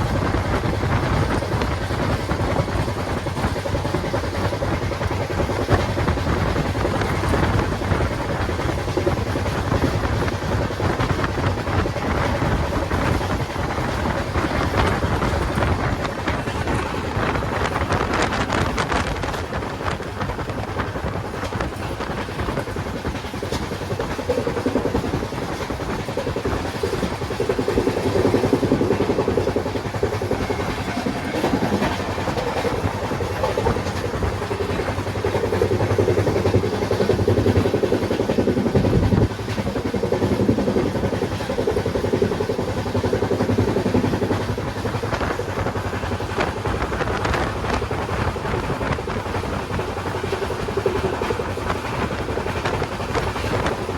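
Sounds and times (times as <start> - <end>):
train rumbling on track: 0.0 - 53.9.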